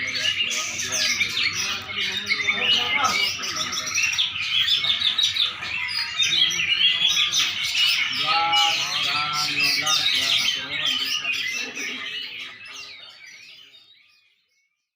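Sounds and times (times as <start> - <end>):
songbird chirping and trilling: 0.0 - 14.9.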